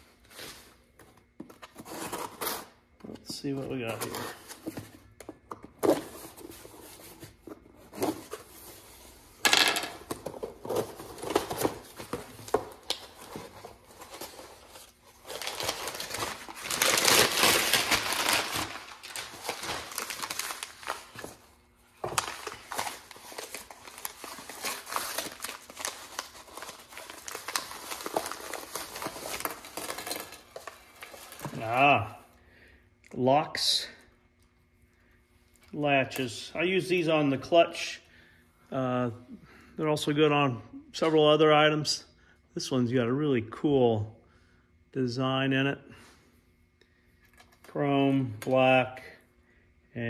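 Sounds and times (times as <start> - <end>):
packaging crinkling and rustling: 10.2 - 31.8.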